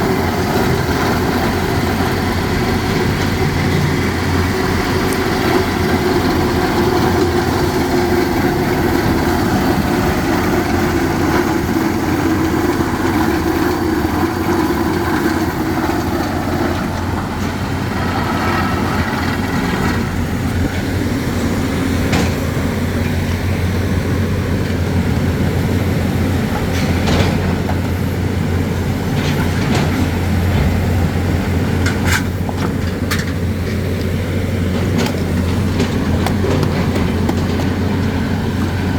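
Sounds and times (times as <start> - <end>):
rock drill rig working: 0.0 - 38.9.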